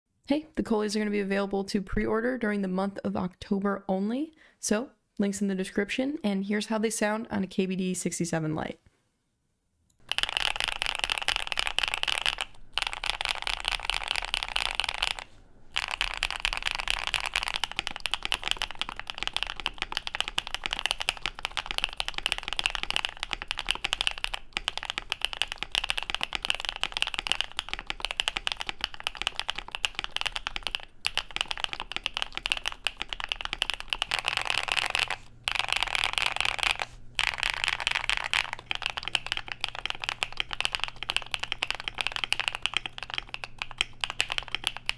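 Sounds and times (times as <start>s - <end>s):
mechanical keyboard typing: 10.0s - 44.9s.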